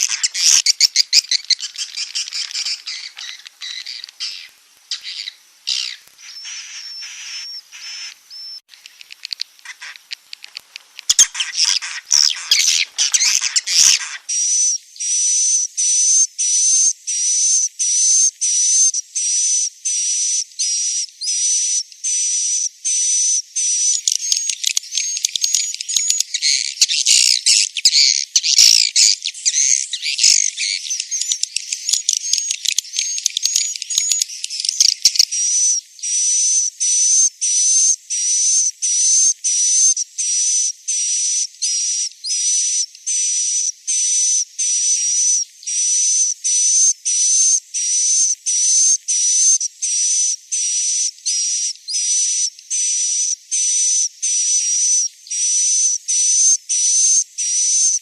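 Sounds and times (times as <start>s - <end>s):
swiftlet twittering chirps: 0.0s - 15.2s, 23.6s - 38.4s.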